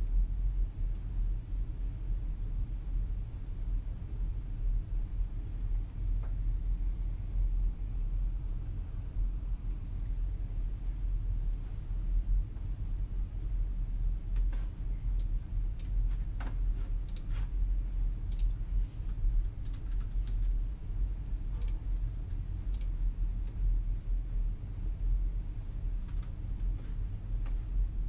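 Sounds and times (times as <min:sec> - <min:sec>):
low office rumble: 0:00.0 - 0:28.0
low room hum: 0:00.0 - 0:28.0
computer mouse clicks: 0:00.5 - 0:00.7, 0:05.6 - 0:06.4, 0:15.2 - 0:16.4, 0:17.0 - 0:17.4, 0:18.3 - 0:20.6, 0:21.4 - 0:23.0, 0:26.0 - 0:26.4
keyboard typing clicks: 0:18.3 - 0:18.6, 0:19.4 - 0:20.6, 0:21.4 - 0:22.9, 0:26.0 - 0:26.4.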